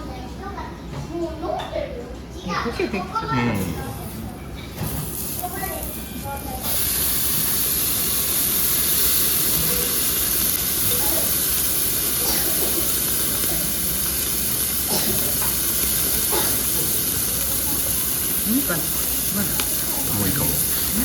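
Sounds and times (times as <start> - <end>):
meat sizzling on a grill: 3.6 - 21.0.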